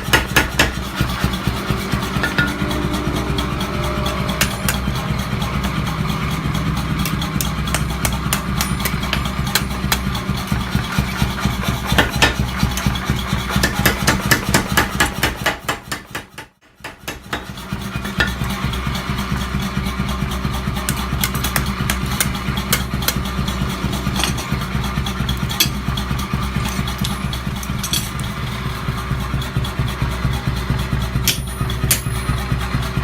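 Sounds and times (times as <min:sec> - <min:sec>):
steady machine hum: 0:00.0 - 0:14.6, 0:17.7 - 0:33.0.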